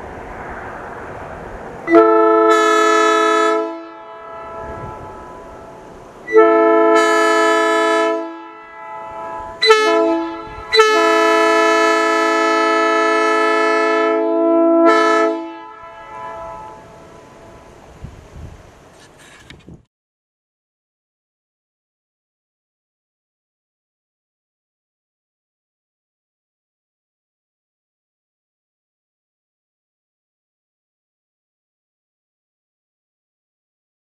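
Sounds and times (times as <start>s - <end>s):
locomotive air horn blasts: 1.8s - 17.7s
horn echo: 1.9s - 17.6s.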